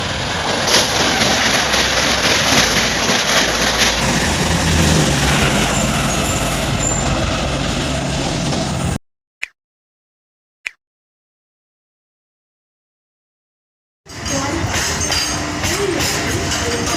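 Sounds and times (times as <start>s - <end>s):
train wheels rumbling on rails: 0.0s - 9.0s, 14.1s - 16.9s.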